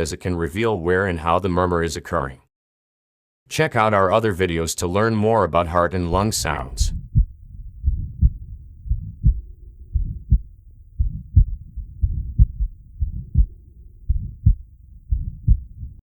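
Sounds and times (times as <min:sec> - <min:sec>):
heart murmur: 0:06.1 - 0:16.0
heartbeat through stethoscope: 0:06.1 - 0:16.0.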